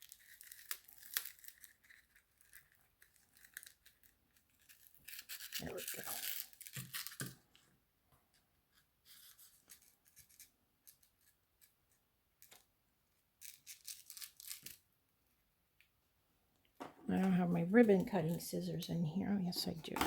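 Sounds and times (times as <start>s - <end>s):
scratchy rustling: 0.0s - 7.3s.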